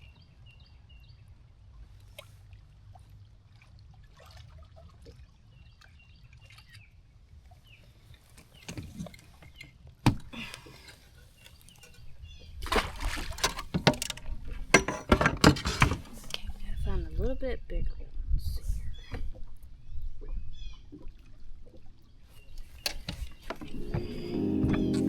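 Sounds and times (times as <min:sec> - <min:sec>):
light rustles and knocks: 0:22.7 - 0:25.0.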